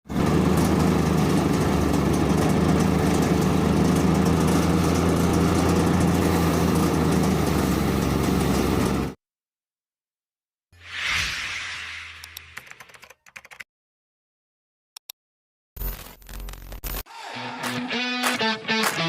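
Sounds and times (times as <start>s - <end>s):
engine running steadily: 0.1s - 9.2s.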